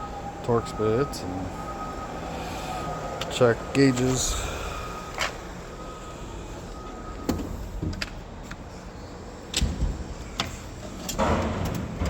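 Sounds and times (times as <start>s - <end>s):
metal drawers sliding and clacking: 9.6s - 12.0s
metal drawer banging shut: 11.1s - 12.0s.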